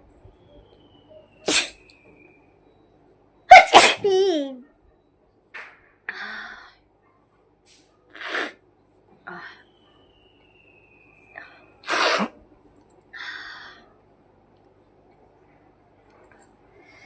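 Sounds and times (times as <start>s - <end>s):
woman sneezing: 3.5s - 4.0s.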